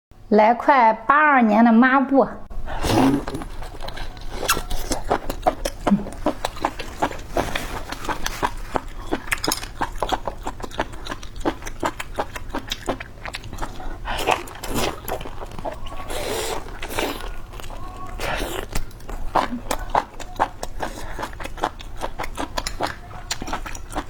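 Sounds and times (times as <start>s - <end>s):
wet chewing sounds: 2.7s - 24.0s.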